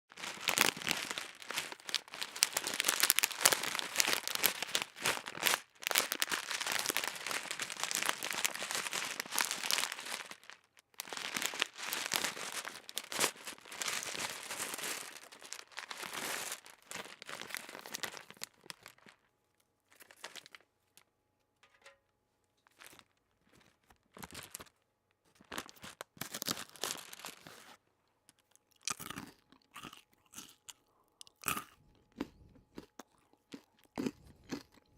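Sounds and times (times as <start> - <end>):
crinkling and crackling: 0.1 - 29.7
crunchy eating: 28.3 - 34.9.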